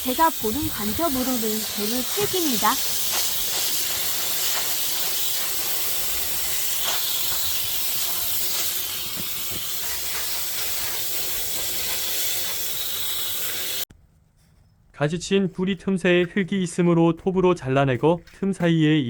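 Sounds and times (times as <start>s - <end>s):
tap water spraying: 0.0s - 13.9s.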